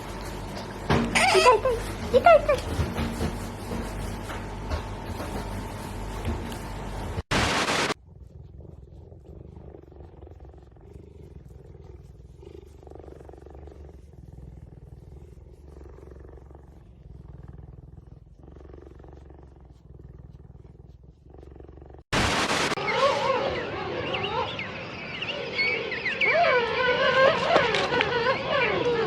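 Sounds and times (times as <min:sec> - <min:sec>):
wavering animal cries: 0:01.1 - 0:02.6, 0:22.8 - 0:29.0
sudden loud burst: 0:07.3 - 0:08.0, 0:22.2 - 0:23.0
faint low animal rumbling: 0:07.9 - 0:22.1.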